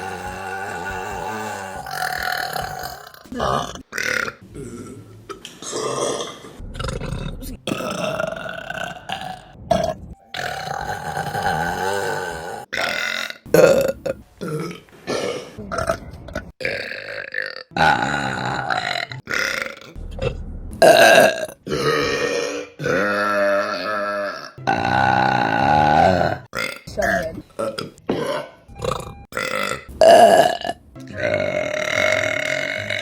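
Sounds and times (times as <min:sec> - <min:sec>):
women burping: 0:00.0 - 0:05.0, 0:07.5 - 0:16.0, 0:20.8 - 0:33.0.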